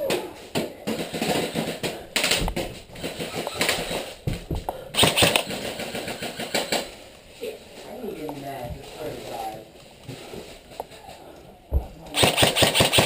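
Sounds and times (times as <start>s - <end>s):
airsoft guns firing: 0.8s - 4.0s, 4.9s - 7.0s, 12.1s - 13.0s.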